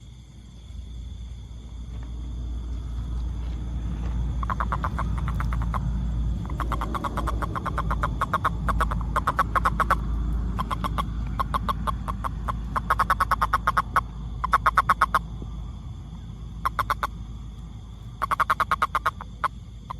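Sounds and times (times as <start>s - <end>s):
low rumble: 0.0s - 19.9s
frog calling in fast pulses: 4.4s - 15.4s, 16.5s - 17.3s, 18.1s - 19.9s.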